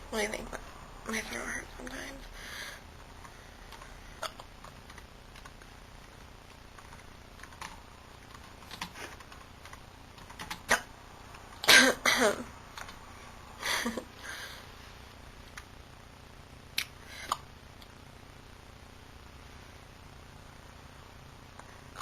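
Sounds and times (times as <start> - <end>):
woman hiccuping: 10.7 - 10.9.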